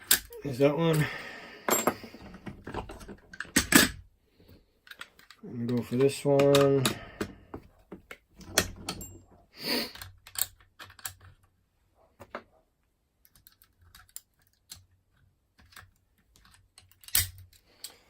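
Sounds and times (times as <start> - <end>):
lock picking metal clicks and scrapes: 9.9 - 11.5, 15.6 - 18.0.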